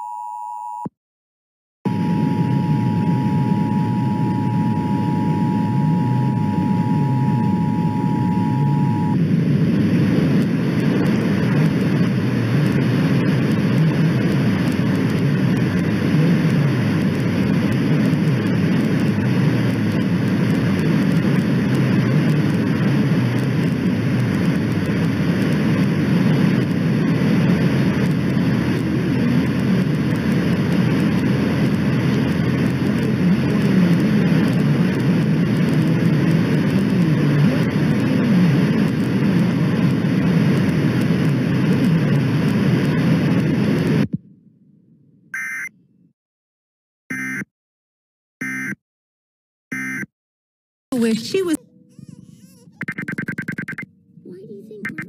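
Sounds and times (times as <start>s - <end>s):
loud steady rushing noise: 1.9s - 44.1s
two-tone alert signal: 45.4s - 45.7s, 51.6s - 53.9s.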